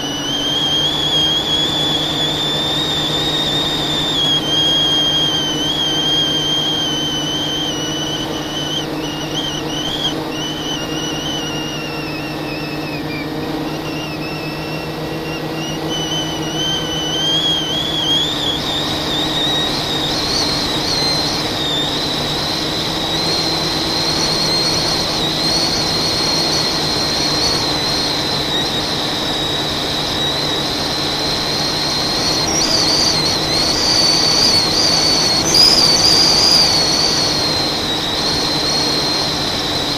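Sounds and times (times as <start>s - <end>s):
propeller wash rushing: 0.0s - 39.9s
quadcopter motors whining: 0.0s - 39.9s.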